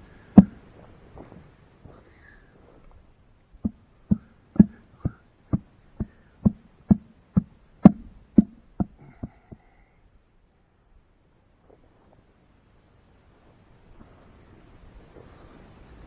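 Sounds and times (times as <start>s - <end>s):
dull blows: 3.6s - 9.8s.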